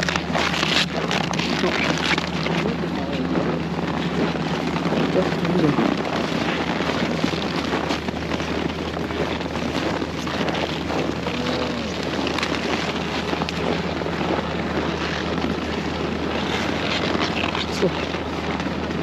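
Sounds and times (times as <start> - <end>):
low engine hum: 0.0 - 19.0
wind rushing over microphone: 0.0 - 19.0.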